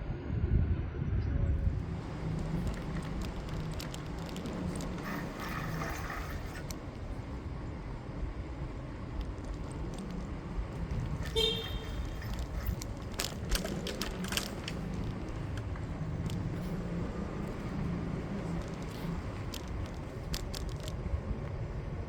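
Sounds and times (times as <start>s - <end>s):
bicycle tyres on road: 1.7s - 22.0s.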